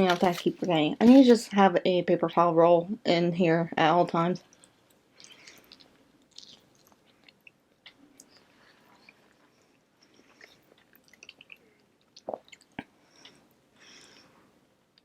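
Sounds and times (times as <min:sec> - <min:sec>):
person chewing food: 0:04.5 - 0:14.3
mouth clicks: 0:05.2 - 0:08.4.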